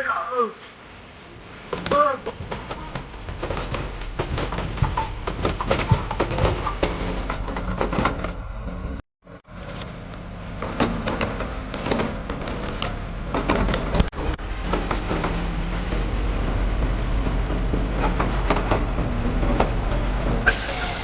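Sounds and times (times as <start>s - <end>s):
heavy machine engine running: 1.1s - 21.0s
sharp knocks and cracks: 1.7s - 8.4s.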